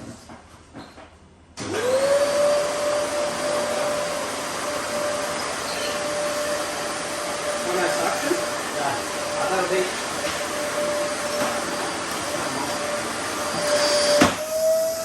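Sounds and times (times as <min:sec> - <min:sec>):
electric motor whine: 0:01.6 - 0:15.0.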